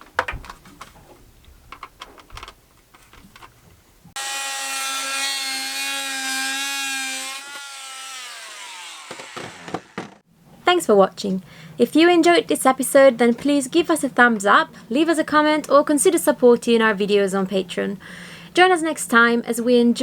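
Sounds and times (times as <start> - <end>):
small electric motor whine: 4.2 - 10.2.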